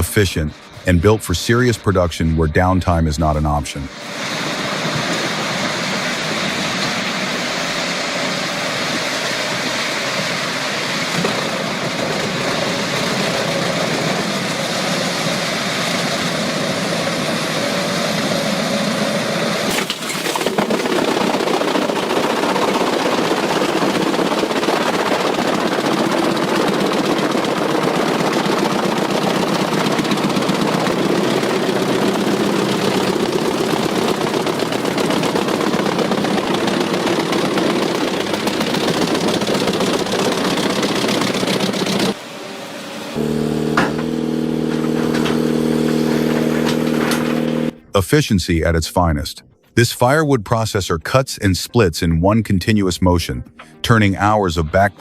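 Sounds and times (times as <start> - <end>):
tree shredder chewing wood: 20.4 - 42.2, 43.2 - 47.8.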